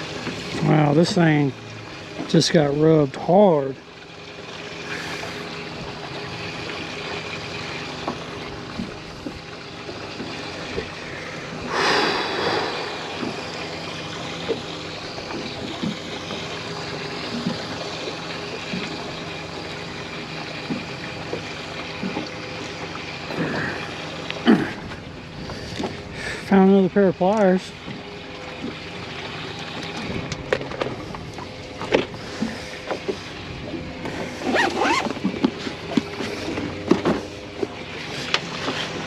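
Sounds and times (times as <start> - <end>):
wind: 0.0 - 39.0
water wash: 6.9 - 24.8
rush of noise: 11.7 - 15.1.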